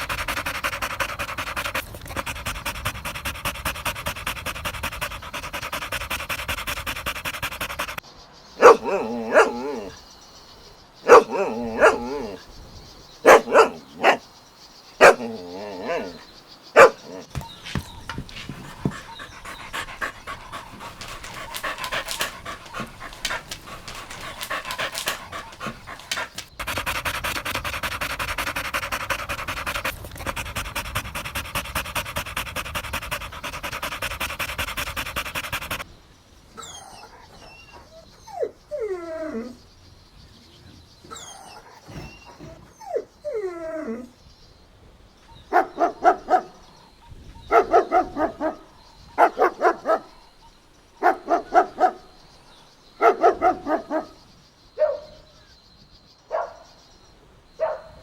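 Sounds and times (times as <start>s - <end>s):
dog panting: 0.0s - 8.0s, 8.6s - 10.1s, 11.1s - 12.4s, 13.2s - 14.3s, 15.0s - 35.9s, 47.5s - 50.3s, 51.0s - 52.1s, 53.0s - 54.2s
dog barking: 8.6s - 10.0s, 11.0s - 12.4s, 13.2s - 14.2s, 15.0s - 16.2s, 16.8s - 29.9s, 45.5s - 46.6s, 47.4s - 50.3s, 51.0s - 52.2s, 53.0s - 54.2s, 54.8s - 55.3s, 56.3s - 56.7s, 57.6s - 58.0s
dog whining: 8.6s - 10.0s, 11.1s - 12.4s, 13.3s - 14.2s, 15.0s - 16.2s, 16.8s - 26.5s.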